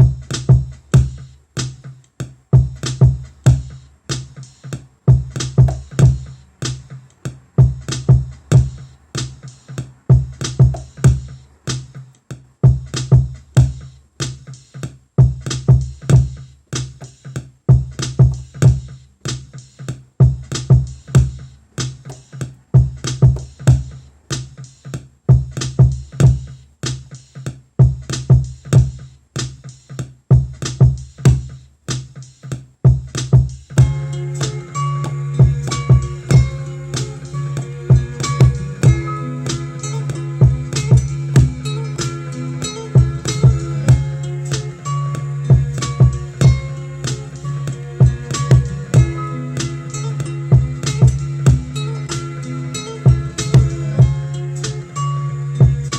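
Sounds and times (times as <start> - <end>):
hip-hop drum pattern: 0.0 - 55.9
deep sub bass: 33.8 - 52.5, 53.1 - 55.9.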